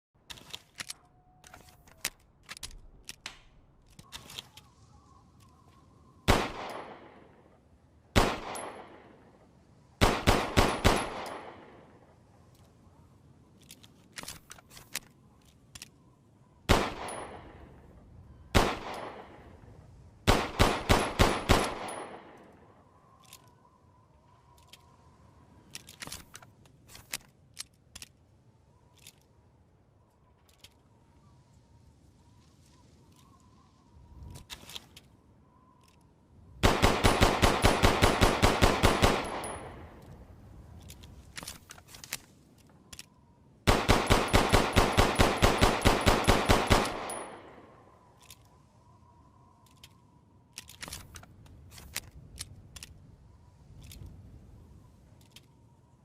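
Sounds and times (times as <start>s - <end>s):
pistol shots echoing: 6.3s - 7.2s, 36.6s - 39.9s, 43.7s - 47.7s
light clicks: 48.0s - 54.2s.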